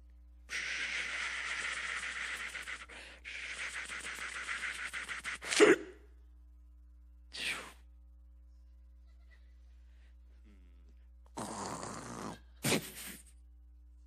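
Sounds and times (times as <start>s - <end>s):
fluttering mouth hiss: 0.5s - 5.8s, 11.4s - 13.4s
loud vocal burst: 0.5s - 6.0s, 11.4s - 13.2s.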